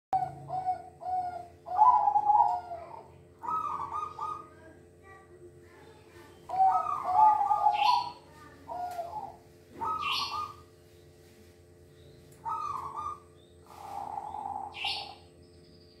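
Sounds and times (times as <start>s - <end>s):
dove cooing: 0.2s - 5.2s, 6.2s - 10.8s, 12.4s - 15.3s.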